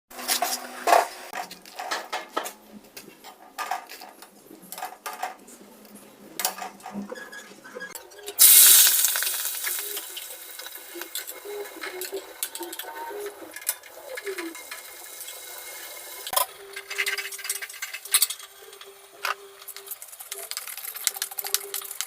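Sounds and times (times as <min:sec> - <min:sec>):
food sizzling in hot oil: 0:08.4 - 0:12.5, 0:19.6 - 0:22.0
utensils clinking on cookware: 0:13.5 - 0:22.0.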